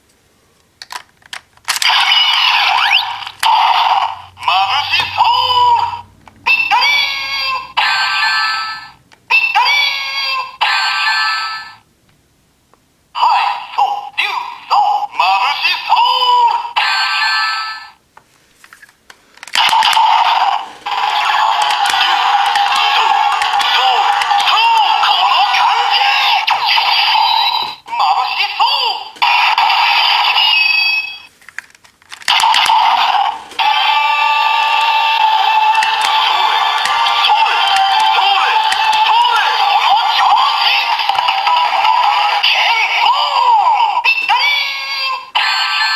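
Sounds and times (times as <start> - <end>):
toy electronic sound effects: 1.7 - 11.8, 19.4 - 31.3, 32.1 - 45.9
synthesized voice calls: 1.9 - 11.7, 13.2 - 17.8, 19.6 - 31.1, 32.3 - 45.9
electronic toy jingle: 29.5 - 31.3.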